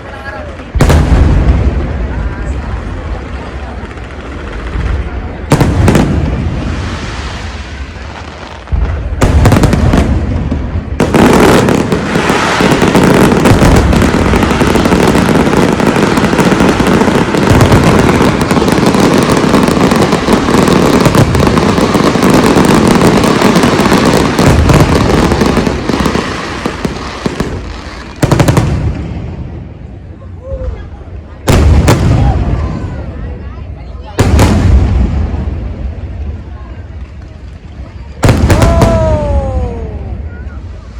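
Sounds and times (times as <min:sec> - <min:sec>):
firework bangs and crackling: 0:00.0 - 0:40.9.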